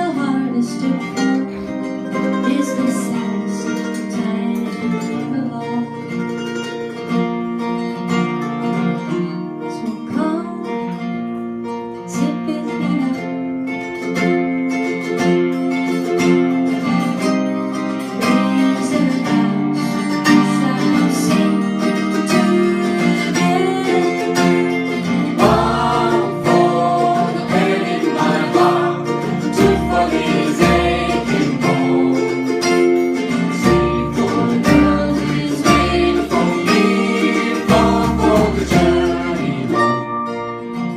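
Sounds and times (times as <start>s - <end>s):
acoustic guitar picked and strummed: 0.0s - 40.9s
person singing: 2.2s - 6.1s, 18.2s - 40.2s
low bass: 25.3s - 39.9s.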